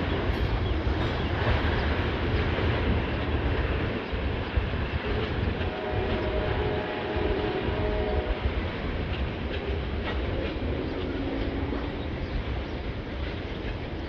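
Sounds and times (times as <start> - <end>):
freight train rumbling by: 0.0 - 14.0
faint train horn chord: 5.6 - 8.8.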